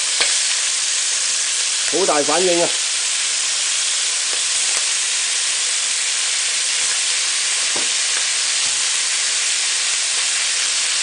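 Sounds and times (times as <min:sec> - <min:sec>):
food sizzling in a wok: 0:00.0 - 0:11.0.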